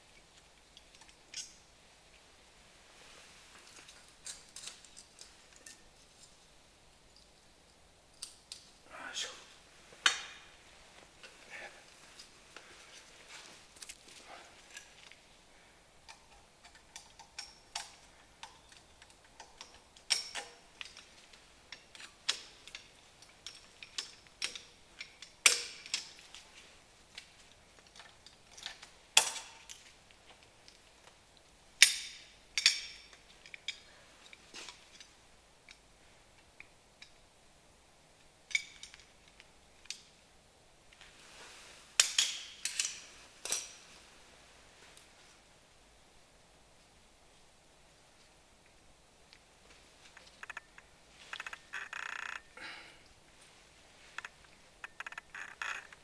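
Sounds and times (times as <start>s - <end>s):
metal tools clicking and clinking: 0.8s - 1.6s, 3.6s - 6.4s, 16.1s - 26.4s, 27.8s - 29.9s, 31.8s - 35.1s, 38.5s - 39.1s, 42.0s - 43.8s.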